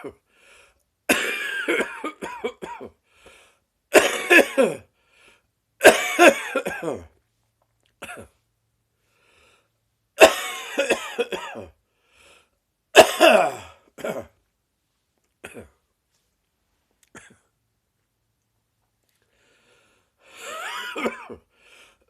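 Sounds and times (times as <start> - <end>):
person coughing: 0.0 - 0.2, 1.1 - 3.0, 3.9 - 4.9, 5.8 - 7.2, 8.0 - 8.4, 10.2 - 11.8, 13.0 - 14.4, 15.4 - 15.8, 17.1 - 17.5, 20.4 - 21.5.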